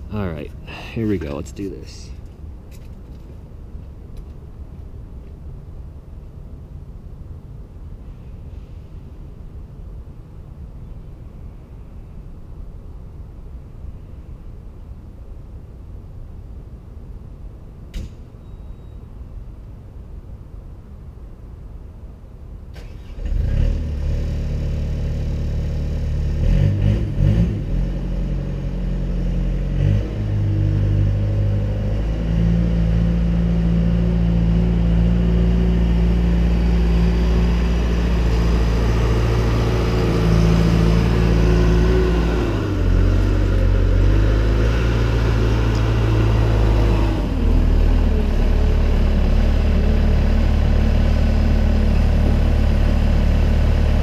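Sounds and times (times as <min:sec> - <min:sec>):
diesel engine starting and revving: 0:22.7 - 0:54.0.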